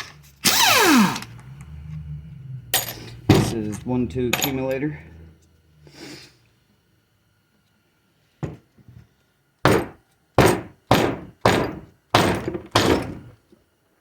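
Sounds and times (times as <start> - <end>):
heavy knocks on metal part: 9.7 - 13.3.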